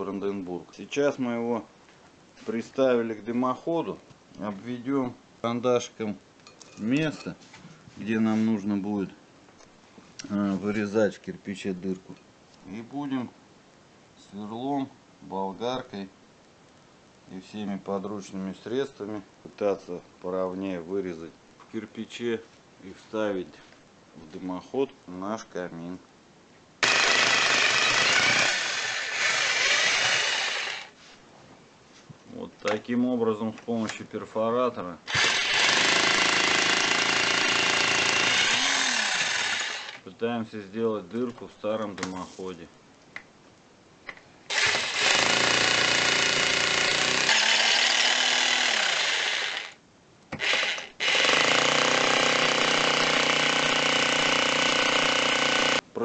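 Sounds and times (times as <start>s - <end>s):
rotary hammer drill boring into brick: 26.8s - 30.9s, 35.1s - 40.0s, 44.5s - 49.8s, 50.4s - 55.8s.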